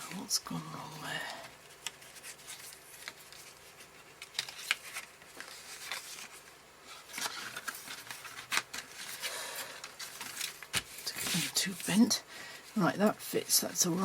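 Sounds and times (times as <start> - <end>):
card rustling: 0.1 - 14.0.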